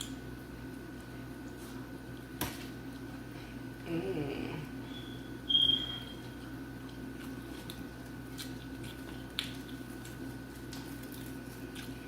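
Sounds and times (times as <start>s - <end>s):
chewing with mouth clicks: 6.2s - 12.0s.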